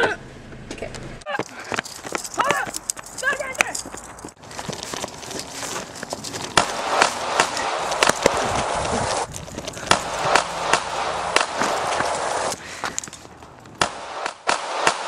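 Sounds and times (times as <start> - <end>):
footsteps running on hard surface: 1.3 - 10.6, 11.3 - 13.3
steady rushing noise: 6.0 - 14.5.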